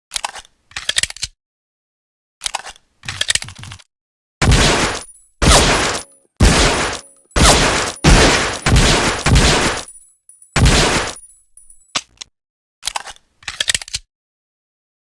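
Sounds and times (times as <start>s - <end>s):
pistol gunshots: 4.4s - 10.0s, 10.6s - 11.2s.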